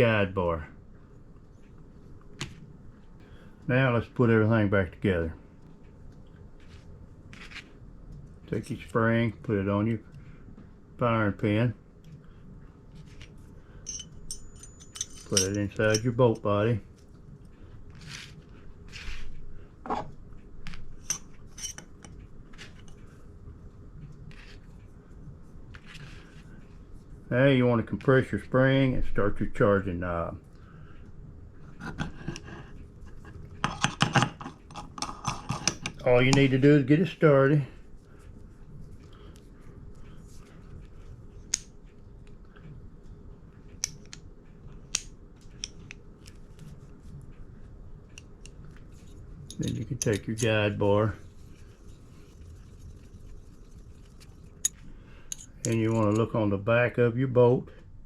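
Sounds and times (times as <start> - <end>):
metal rifle bolt parts clicking: 13.9 - 16.4.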